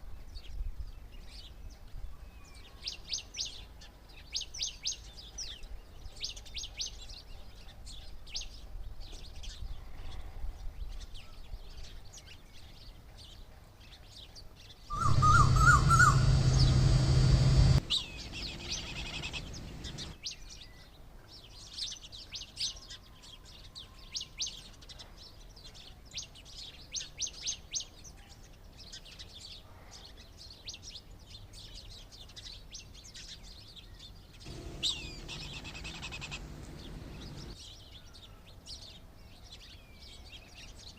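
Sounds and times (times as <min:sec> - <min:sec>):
small birds chirping: 0:00.0 - 0:40.9
noisy rush with low hum: 0:14.9 - 0:20.2, 0:34.5 - 0:37.6.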